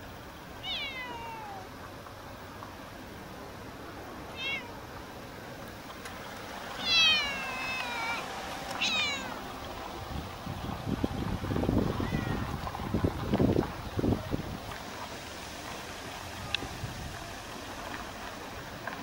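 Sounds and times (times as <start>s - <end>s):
cat meowing: 0.6s - 1.7s, 4.3s - 4.8s, 6.8s - 9.4s, 12.0s - 12.5s.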